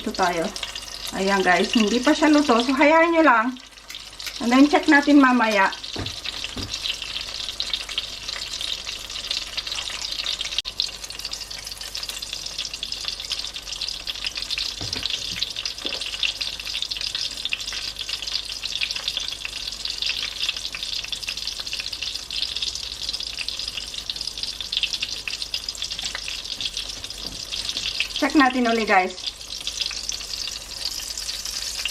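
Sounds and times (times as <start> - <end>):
omelette sizzling in oil: 0.0 - 31.9
faint low thuds: 5.9 - 6.9.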